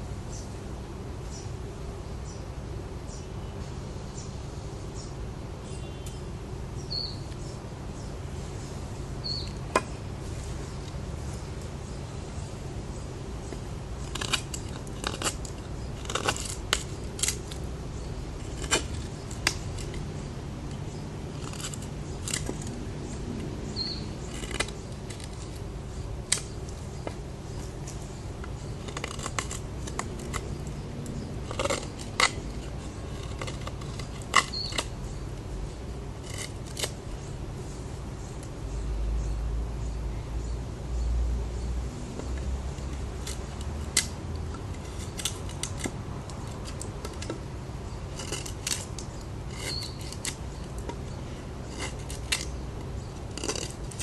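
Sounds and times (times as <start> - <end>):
knife snipping and clicking: 53.4 - 54.0.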